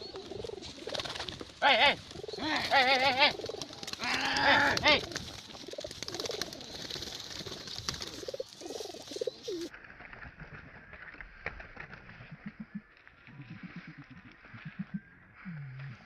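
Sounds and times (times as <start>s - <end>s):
pigeons cooing: 0.0s - 9.7s, 12.1s - 16.0s.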